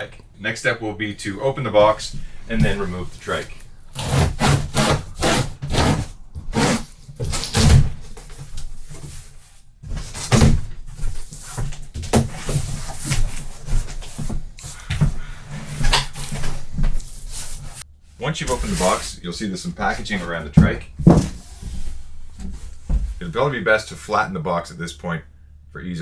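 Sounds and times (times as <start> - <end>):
cardboard scraping and rubbing: 1.5 - 19.1, 19.8 - 23.4
knocks and thumps on box: 20.6 - 23.2.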